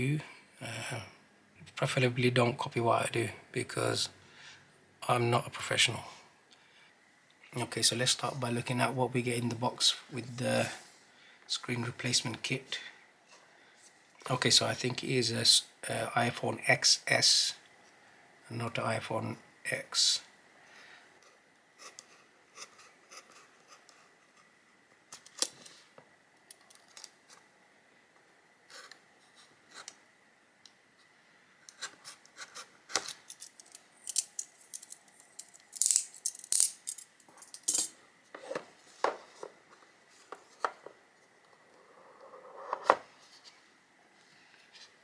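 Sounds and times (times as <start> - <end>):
packaging and small parts handled: 33.0 - 37.7.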